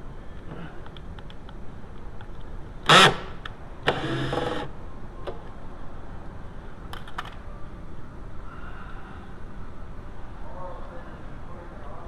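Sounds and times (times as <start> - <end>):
hand tool whirring: 2.9 - 4.7.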